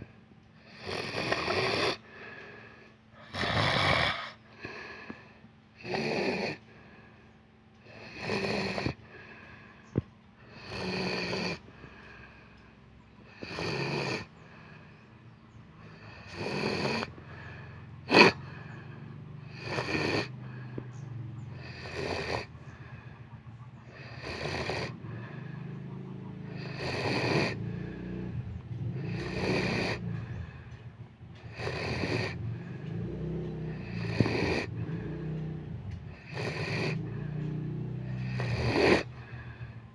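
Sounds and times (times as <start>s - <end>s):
person snoring: 0.6s - 2.6s, 3.2s - 6.7s, 7.8s - 9.4s, 10.5s - 12.5s, 13.2s - 14.8s, 15.8s - 20.8s, 21.5s - 23.0s, 23.9s - 25.6s, 26.5s - 30.6s, 31.5s - 39.9s.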